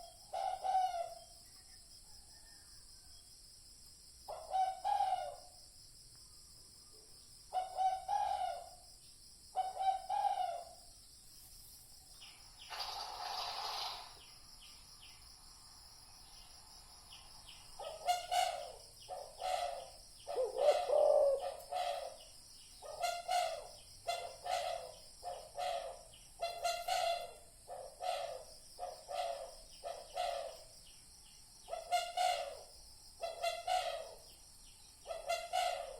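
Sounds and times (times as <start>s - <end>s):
dove cooing: 0.0s - 1.1s, 4.3s - 5.4s, 7.6s - 8.7s, 9.6s - 10.7s, 17.8s - 22.2s, 22.8s - 30.6s, 31.7s - 34.2s, 35.1s - 35.9s.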